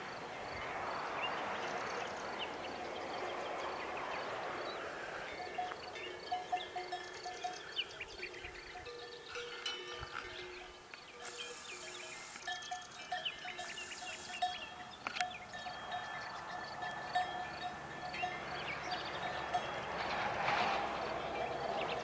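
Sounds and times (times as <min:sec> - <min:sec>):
small metal bells clinking: 0:05.3 - 0:20.1
high hiss bursts: 0:11.2 - 0:12.5, 0:13.6 - 0:14.5.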